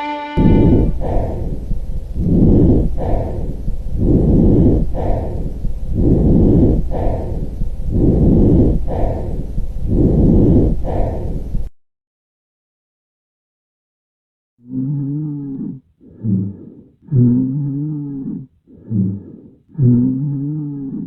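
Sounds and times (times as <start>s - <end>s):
breathing: 0.6s - 11.7s, 14.7s - 21.0s.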